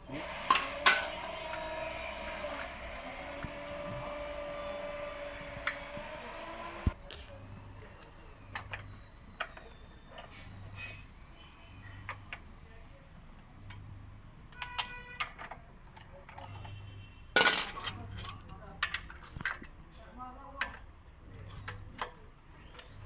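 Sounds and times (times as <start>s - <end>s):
metal tools clicking and knocking: 7.9s - 11.1s, 14.5s - 16.8s, 17.4s - 19.8s.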